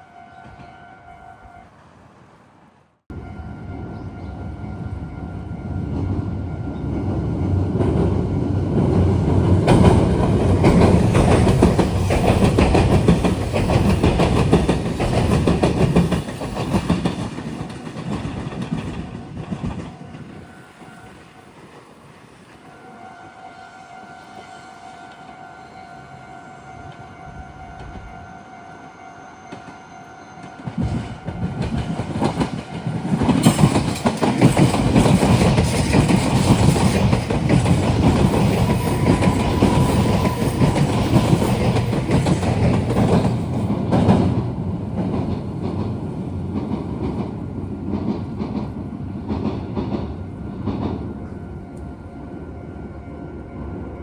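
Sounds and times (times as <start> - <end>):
electric train passing: 0.0 - 54.0
level crossing warning signal: 38.1 - 42.0.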